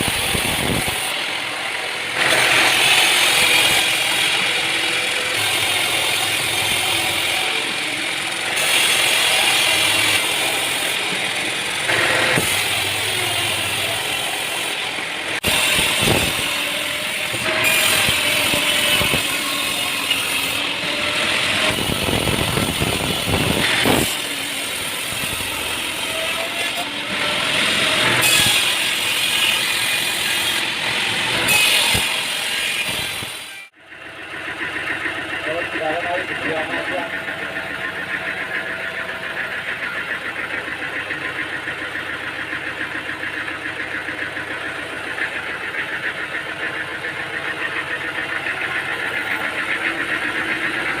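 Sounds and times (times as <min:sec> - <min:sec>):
sawmill machinery clattering: 0:00.0 - 0:51.0.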